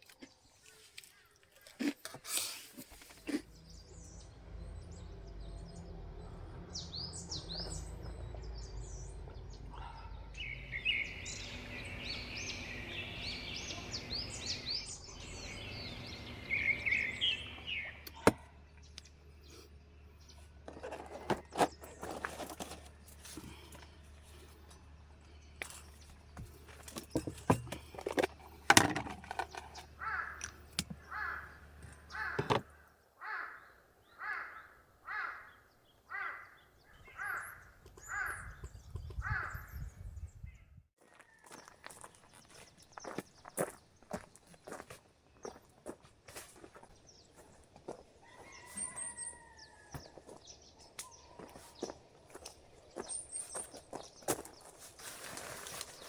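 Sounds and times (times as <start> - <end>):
small birds chirping: 0.0 - 28.7, 29.3 - 56.0.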